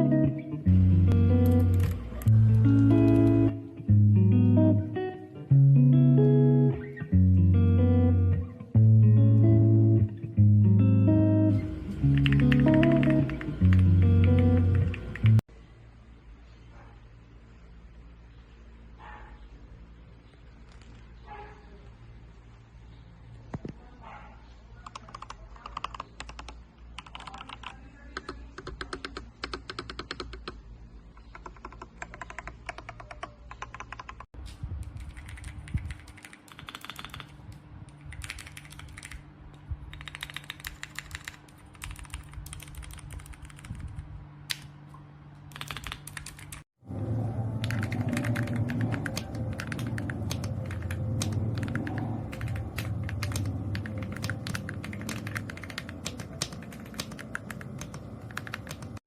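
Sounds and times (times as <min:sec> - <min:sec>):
mechanical keyboard keystroke clacks: 0:24.8 - 0:30.6, 0:31.2 - 0:34.3, 0:35.0 - 0:37.4, 0:38.1 - 0:39.2, 0:39.9 - 0:44.7, 0:45.5 - 0:46.6, 0:47.6 - 0:59.0.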